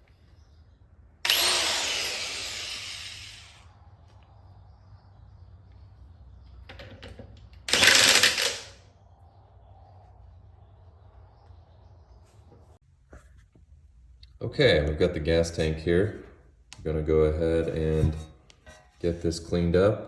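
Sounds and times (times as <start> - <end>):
impact wrench running: 1.2 - 3.7, 7.7 - 8.8.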